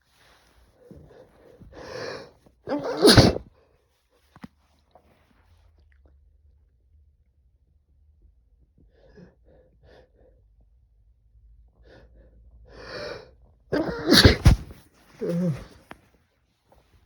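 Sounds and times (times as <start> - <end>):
man sneezing loudly: 2.7 - 3.5, 13.8 - 15.8.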